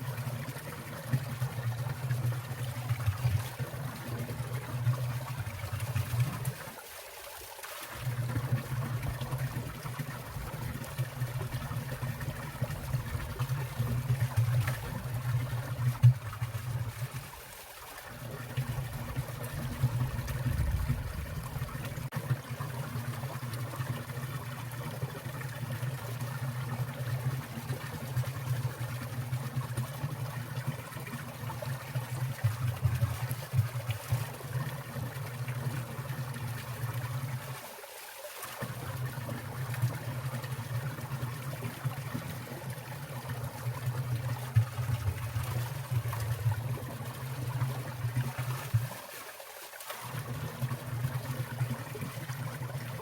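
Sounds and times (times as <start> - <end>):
stream trickling and splashing: 0.0 - 53.0
steady low rumble: 19.6 - 22.1.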